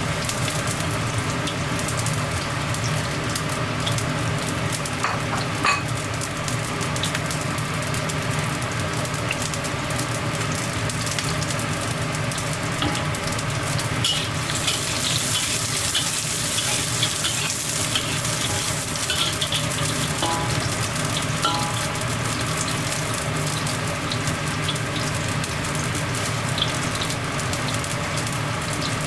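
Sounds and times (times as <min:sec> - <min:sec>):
food sizzling in a pan: 0:00.0 - 0:29.0
stirring clicks: 0:14.0 - 0:22.8.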